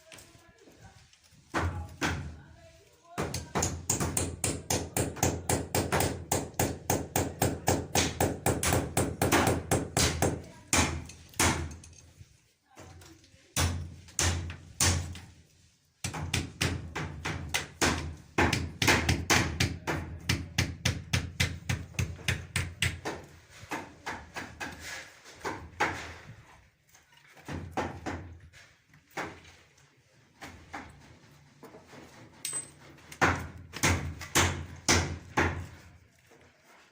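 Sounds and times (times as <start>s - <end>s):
rapid hammering: 3.2s - 11.7s, 13.6s - 15.2s, 16.0s - 23.3s, 33.2s - 35.6s.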